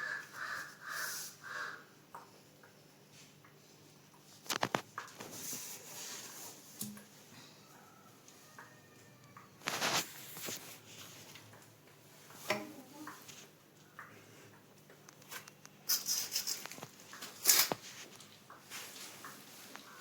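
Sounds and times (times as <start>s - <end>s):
handling scrapes knocks and rustles: 4.3s - 7.1s, 9.6s - 11.6s, 15.2s - 19.9s.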